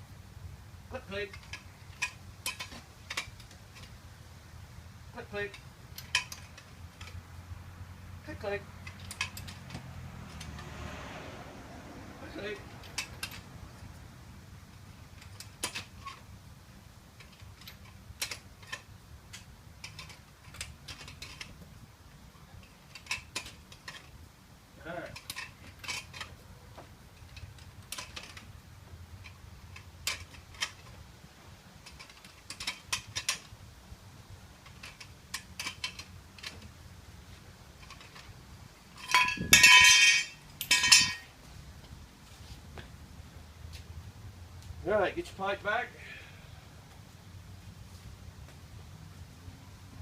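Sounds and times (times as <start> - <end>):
metal hand tools clinking: 1.2 - 4.0, 5.2 - 7.2, 8.8 - 10.8, 12.4 - 14.0, 15.0 - 16.3, 17.2 - 21.6, 22.4 - 24.2, 25.0 - 26.5, 29.2 - 30.9, 31.8 - 33.6, 34.6 - 36.7, 37.8 - 41.4
loud ringing metal clanks: 39.0 - 41.3.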